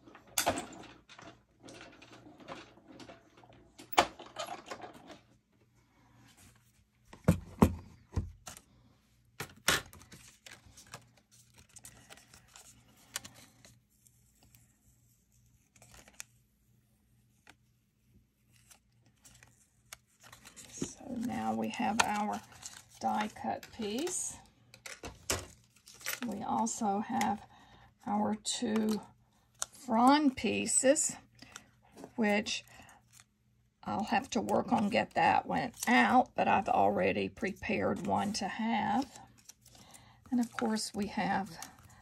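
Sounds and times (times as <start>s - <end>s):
paper rustling: 9.8s - 16.4s, 18.4s - 24.2s, 24.8s - 26.4s, 37.4s - 42.0s.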